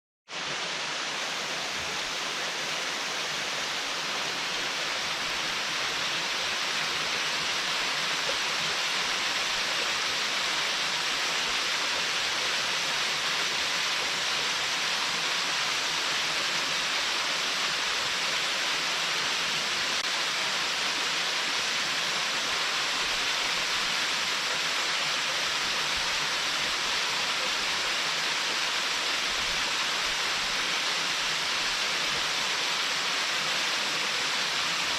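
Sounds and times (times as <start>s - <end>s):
waterfall rushing: 0.3s - 34.9s.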